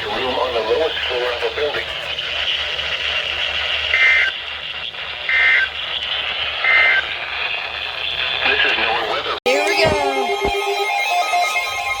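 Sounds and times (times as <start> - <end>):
radio hiss: 0.0 - 10.6
buzzy two-tone digital chirps: 9.5 - 12.0.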